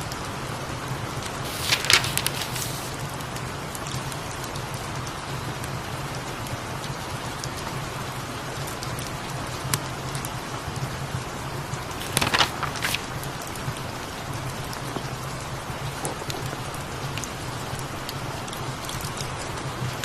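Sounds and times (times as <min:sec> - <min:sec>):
rain pattering: 0:01.2 - 0:20.0
light ticks and crackles: 0:01.4 - 0:03.0.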